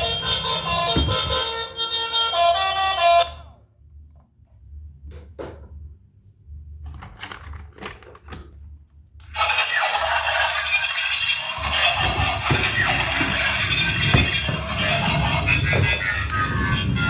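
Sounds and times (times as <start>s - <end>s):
music: 0.0s - 3.6s.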